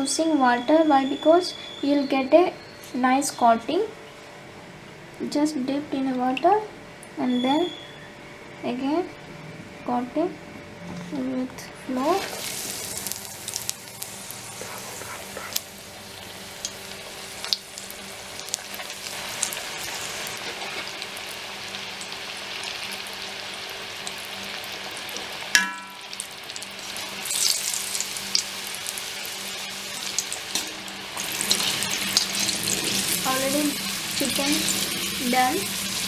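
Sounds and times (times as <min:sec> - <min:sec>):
chicken deep-frying in oil: 0:11.9 - 0:36.0.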